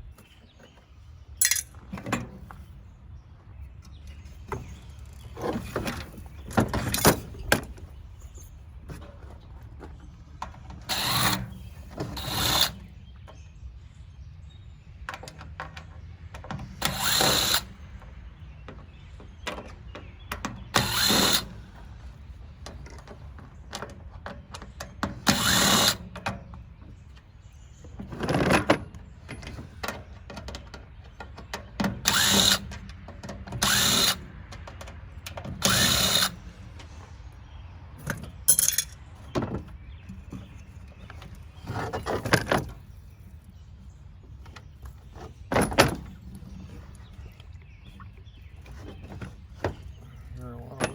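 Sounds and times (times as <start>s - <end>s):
handling noises: 0.0s - 13.5s, 15.0s - 50.9s
power drill running: 16.9s - 17.7s, 20.8s - 21.5s, 25.3s - 26.0s, 32.1s - 32.6s, 33.6s - 34.2s, 35.6s - 36.4s.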